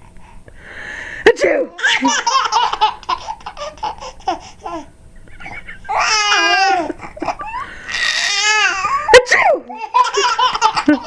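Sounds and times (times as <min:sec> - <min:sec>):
babies laughing: 0:01.8 - 0:11.0
high-pitched squealing laugh: 0:05.2 - 0:11.0
babies babbling: 0:05.9 - 0:09.0.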